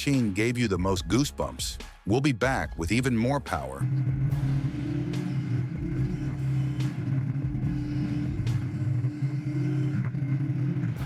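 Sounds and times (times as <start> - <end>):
heavy machine engine drone: 3.8 - 11.0.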